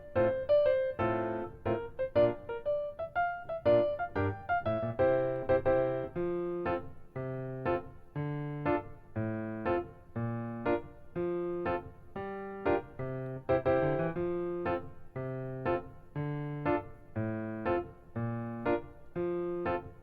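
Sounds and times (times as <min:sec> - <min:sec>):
gentle piano chords: 0:00.0 - 0:20.0.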